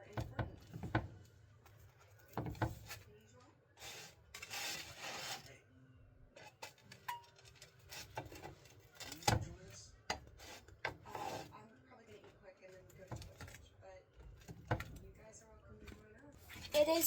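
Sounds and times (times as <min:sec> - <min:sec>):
utensil scraping cooking pan: 0:03.8 - 0:05.6, 0:06.4 - 0:11.7.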